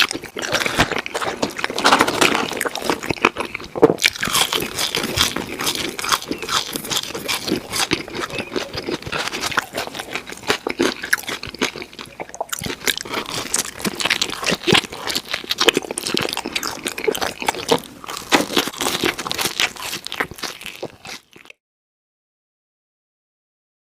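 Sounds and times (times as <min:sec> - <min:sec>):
pizza crust crunching: 0:00.0 - 0:21.5.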